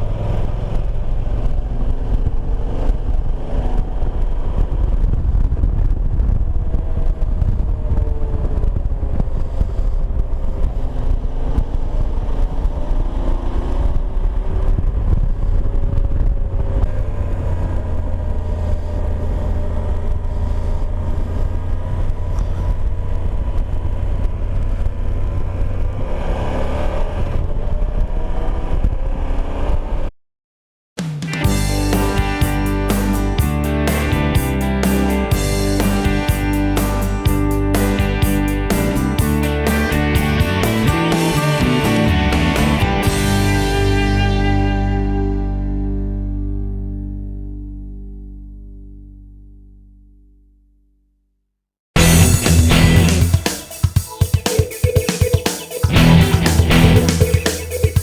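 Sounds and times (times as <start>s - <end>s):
wind rush over microphone: 1.2s - 12.6s
music: 31.0s - 49.6s, 52.0s - 58.0s
motorcycle engine running: 31.4s - 45.9s, 52.0s - 58.0s.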